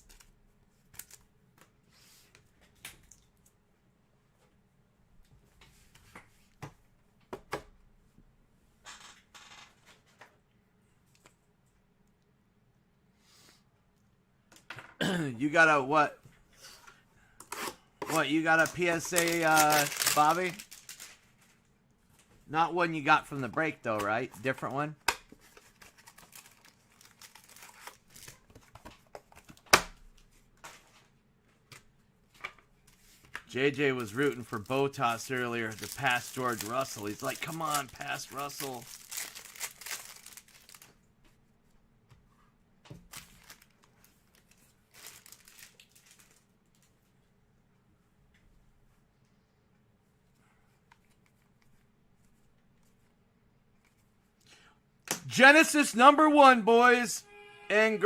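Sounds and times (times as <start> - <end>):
cards sliding rustle: 17.5 - 21.5
wrappers crinkling and tearing: 18.1 - 21.5, 25.5 - 28.5, 33.7 - 41.0, 43.1 - 46.5.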